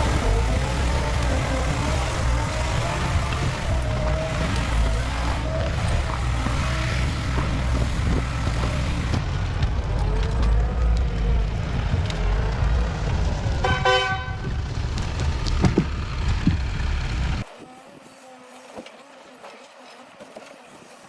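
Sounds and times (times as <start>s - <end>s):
heavy vehicle engine rumbling: 0.0s - 17.6s
horn toot: 13.6s - 14.5s.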